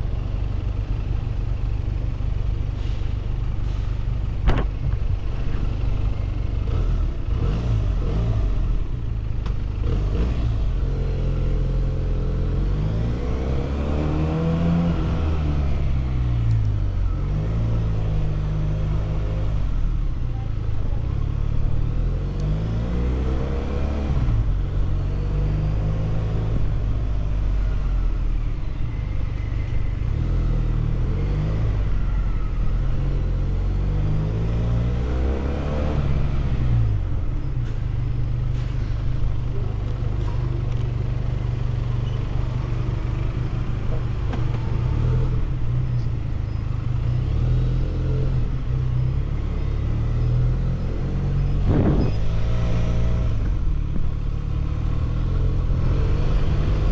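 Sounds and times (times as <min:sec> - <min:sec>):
motorcycle engine revving: 0:06.5 - 0:20.1.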